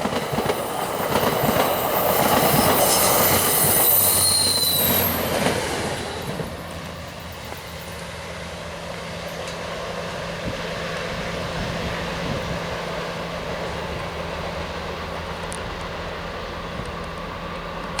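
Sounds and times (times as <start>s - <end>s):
train rumbling: 0.0s - 18.0s.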